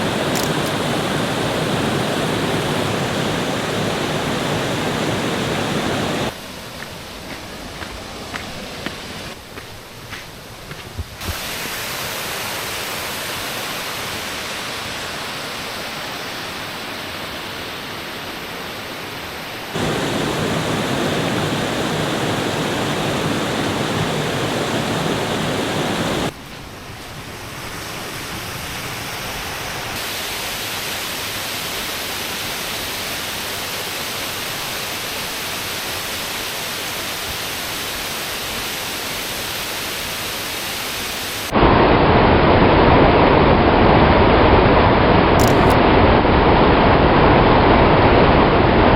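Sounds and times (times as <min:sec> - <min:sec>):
waterfall rushing: 0:00.0 - 0:06.4, 0:11.2 - 0:26.3.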